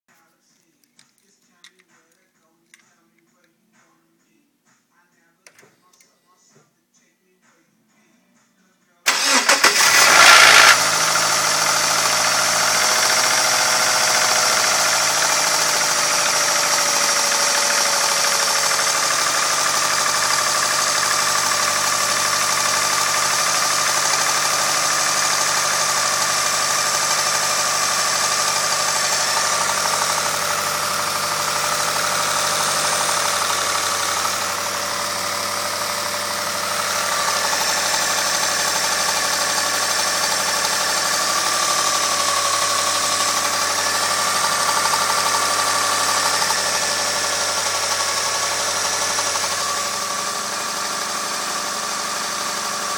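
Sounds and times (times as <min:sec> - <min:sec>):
engine start-up rattle: 0:09.1 - 0:13.4
car engine cranking and starting: 0:09.1 - 0:52.9
car engine idling: 0:09.1 - 0:52.9.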